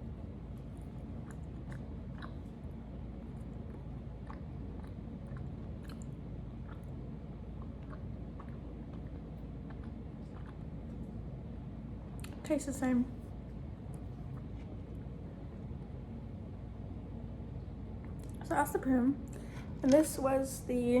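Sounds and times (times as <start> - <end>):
person chewing crunchy snack: 0.7 - 2.7, 3.3 - 10.9.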